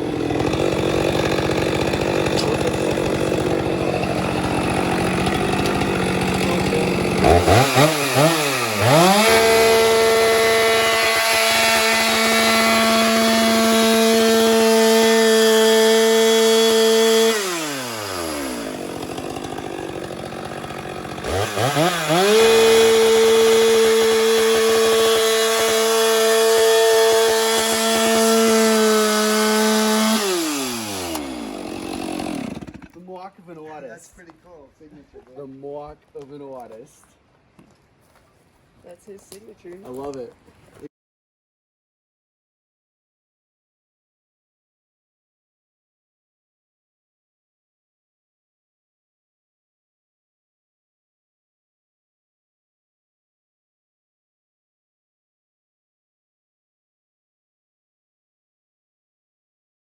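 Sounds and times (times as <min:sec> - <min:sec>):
chainsaw idling and revving: 0:00.0 - 0:33.1.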